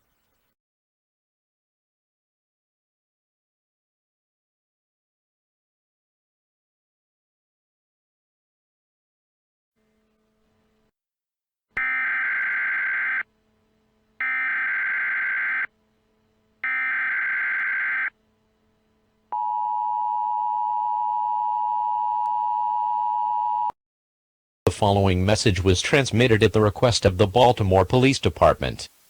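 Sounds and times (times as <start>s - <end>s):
steady dual attention tone: 11.8s - 23.7s
data tone bursts: 16.6s - 18.1s.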